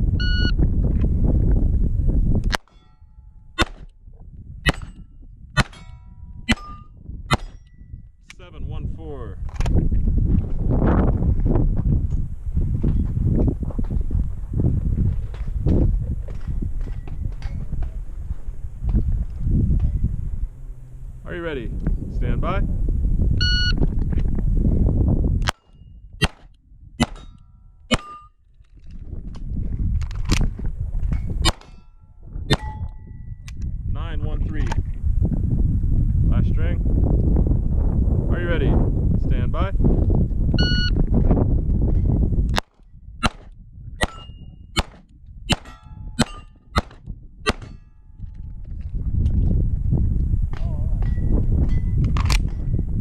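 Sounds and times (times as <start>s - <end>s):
wind buffeting microphone: 0.0s - 53.0s
shot timer beep: 0.2s - 0.6s, 23.4s - 23.8s, 40.6s - 41.0s
pistol shots: 3.6s - 3.9s, 4.7s - 5.0s, 5.6s - 5.9s, 6.5s - 7.6s, 25.5s - 28.2s, 31.4s - 31.8s, 42.6s - 47.8s
steel targets ringing: 5.7s - 7.6s.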